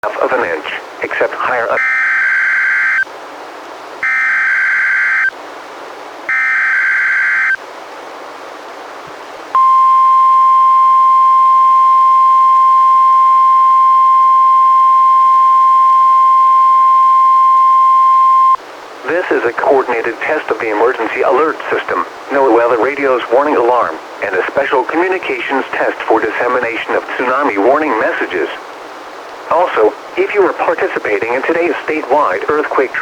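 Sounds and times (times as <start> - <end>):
radio hiss: 0.0 - 3.1, 14.5 - 33.0
digital data tone bursts: 1.8 - 3.1, 4.0 - 5.3, 6.3 - 7.6
steady warning alarm tone: 1.8 - 3.1, 4.0 - 5.4, 6.3 - 7.6, 9.6 - 18.6.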